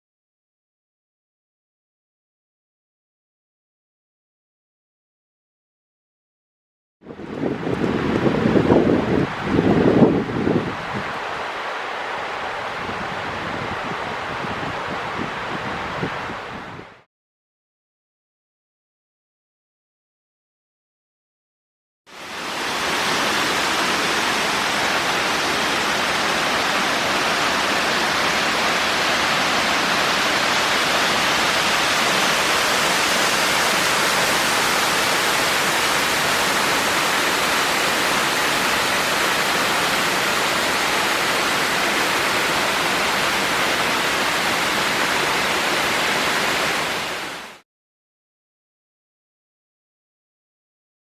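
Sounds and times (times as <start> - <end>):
waterfall roaring: 7.1 - 16.6, 22.1 - 47.6.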